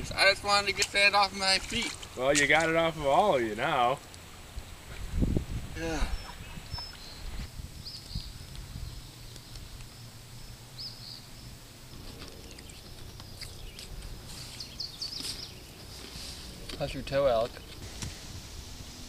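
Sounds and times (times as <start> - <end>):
bird chirping: 6.1 - 17.8.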